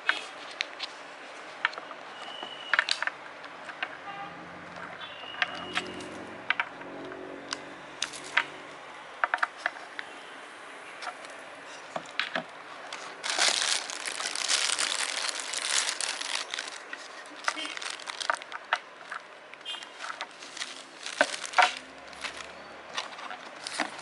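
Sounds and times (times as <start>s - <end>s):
plastic wrapping crinkling: 12.8s - 24.0s.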